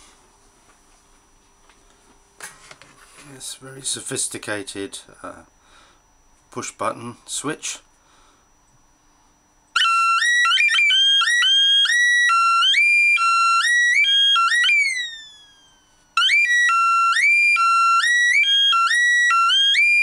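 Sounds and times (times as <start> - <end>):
electronic doorbell tone: 9.8 - 20.0.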